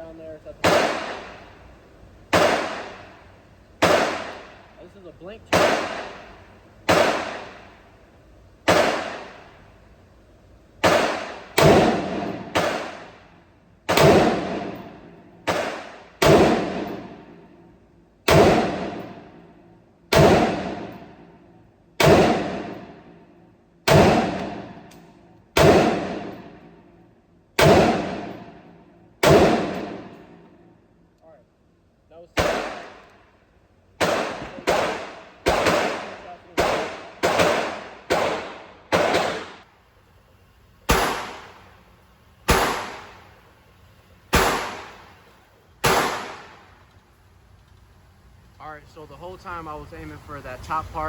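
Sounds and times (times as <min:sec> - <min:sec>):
gunshots: 0:00.5 - 0:01.6, 0:02.3 - 0:03.2, 0:03.8 - 0:04.6, 0:05.2 - 0:07.8, 0:08.6 - 0:09.6, 0:10.8 - 0:13.2, 0:13.9 - 0:17.4, 0:18.3 - 0:19.4, 0:20.1 - 0:21.2, 0:22.0 - 0:23.1, 0:23.9 - 0:24.9, 0:25.5 - 0:26.7, 0:27.6 - 0:30.4, 0:32.4 - 0:33.1, 0:34.0 - 0:39.7, 0:40.9 - 0:41.7, 0:42.5 - 0:43.4, 0:44.3 - 0:46.8.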